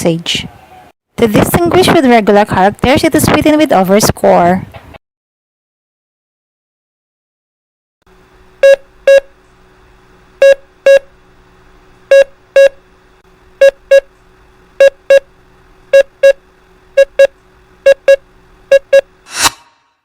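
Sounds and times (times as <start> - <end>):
steady hum: 8.1 - 19.9
morse code dits: 8.6 - 9.3, 10.4 - 11.1, 12.1 - 12.8, 13.6 - 14.1, 14.8 - 15.3, 15.9 - 16.4, 17.0 - 19.1.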